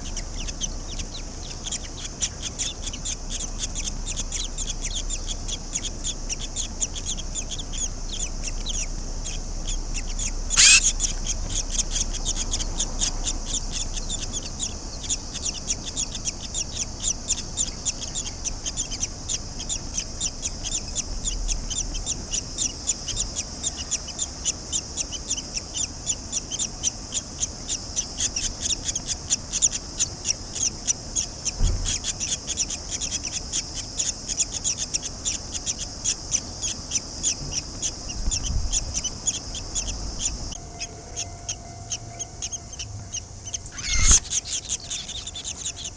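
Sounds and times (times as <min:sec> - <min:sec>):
chicks chirping: 0:00.0 - 0:45.9.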